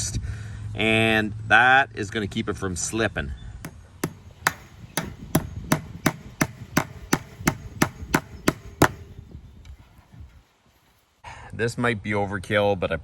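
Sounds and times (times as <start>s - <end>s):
hammer blows on wood: 3.7s - 9.4s.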